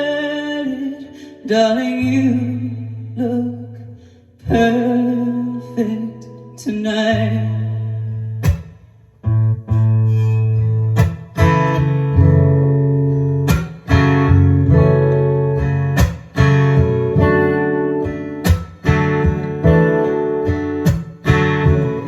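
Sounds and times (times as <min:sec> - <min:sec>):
acoustic guitar strumming chords: 0:04.4 - 0:22.0.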